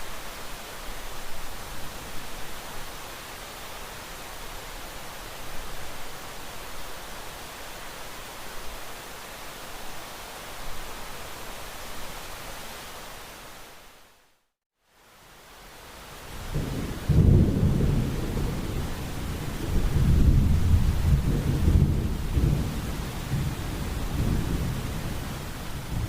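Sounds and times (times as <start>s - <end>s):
rain hissing: 14.9s - 26.0s
thunder rumbling: 16.5s - 26.0s.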